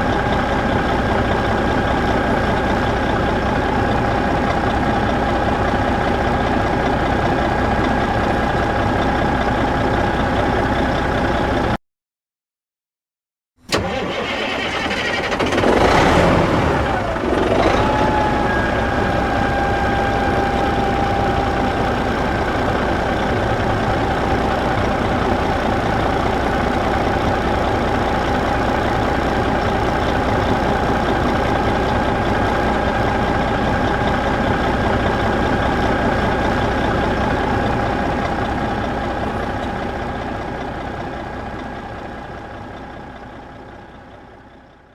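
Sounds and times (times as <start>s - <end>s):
diesel engine idling: 0.0s - 11.8s, 13.7s - 44.9s
high engine whine: 13.7s - 42.8s.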